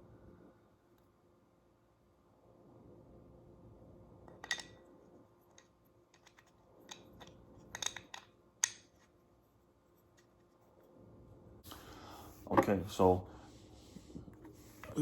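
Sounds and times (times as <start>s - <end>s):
faint steady hum: 0.0s - 15.0s
small parts clicking and tapping: 5.5s - 9.2s.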